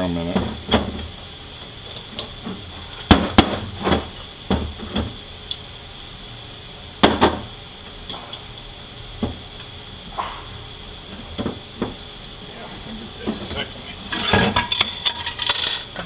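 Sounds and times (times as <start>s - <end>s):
steady high hiss: 0.0s - 16.0s
metal parts clunking and knocking: 14.1s - 15.9s.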